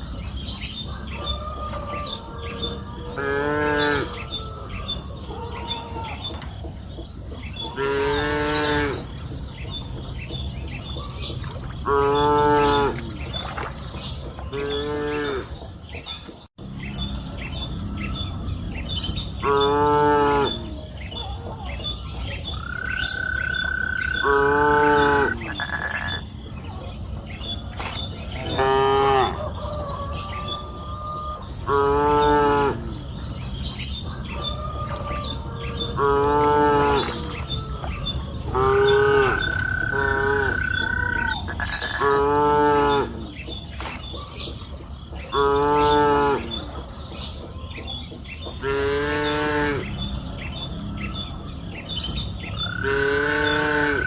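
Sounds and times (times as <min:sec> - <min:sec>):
cattle mooing: 0:52.8 - 0:54.0.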